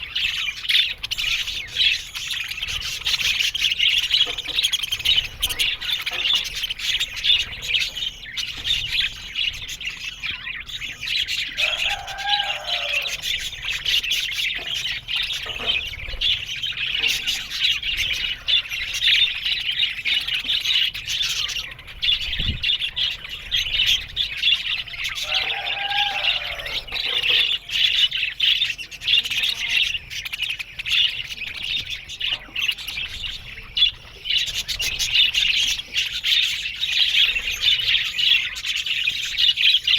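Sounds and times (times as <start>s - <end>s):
lower arching bird calls: 0.0s - 28.7s
budgerigars chattering: 0.0s - 39.9s.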